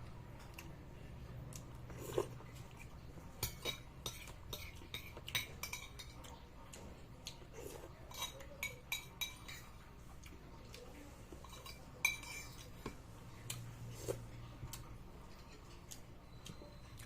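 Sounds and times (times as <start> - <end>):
spoon and fork clinking on bowl: 3.4 - 6.2, 11.4 - 13.0.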